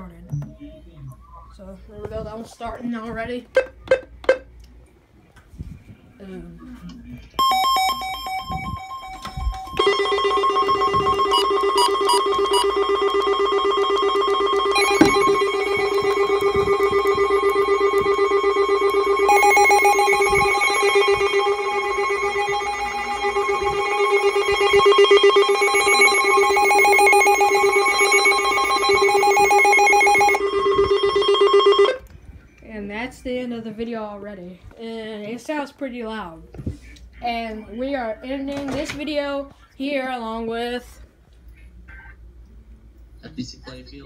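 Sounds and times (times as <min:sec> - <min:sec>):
weather radio siren alerts: 0:07.4 - 0:32.0.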